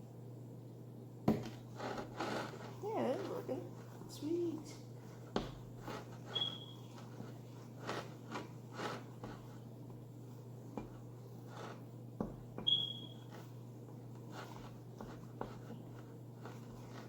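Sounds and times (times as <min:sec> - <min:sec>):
low steady hum: 0:00.0 - 0:17.0
stick scraping slime in cup: 0:01.5 - 0:04.1, 0:05.2 - 0:09.7, 0:10.7 - 0:11.9, 0:12.6 - 0:13.6, 0:14.2 - 0:17.0
short high squeak: 0:06.3 - 0:06.8, 0:12.7 - 0:13.2.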